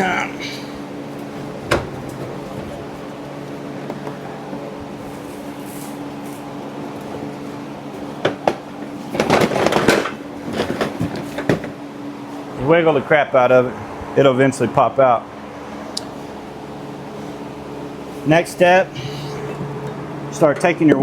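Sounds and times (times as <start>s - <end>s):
steady low hum: 0.0s - 21.0s
plastic rattling and scraping: 9.0s - 11.8s.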